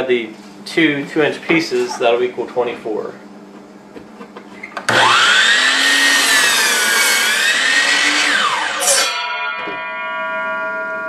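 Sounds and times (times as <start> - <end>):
miter saw cutting wood: 4.9 - 9.2
bell-like ringing chord: 9.0 - 11.0.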